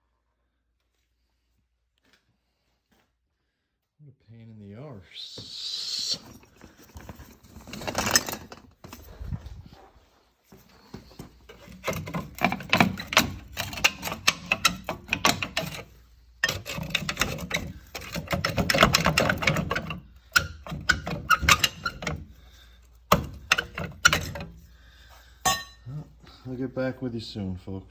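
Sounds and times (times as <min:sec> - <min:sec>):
metal tools clattering: 0:06.3 - 0:09.6, 0:11.3 - 0:24.6, 0:25.4 - 0:25.9.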